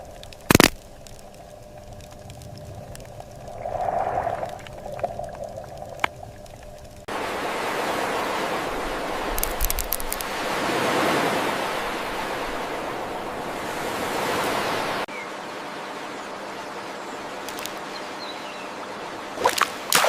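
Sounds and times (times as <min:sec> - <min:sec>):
low rumble with faint hum: 0:00.0 - 0:07.1
flowing water rushing: 0:01.2 - 0:15.1.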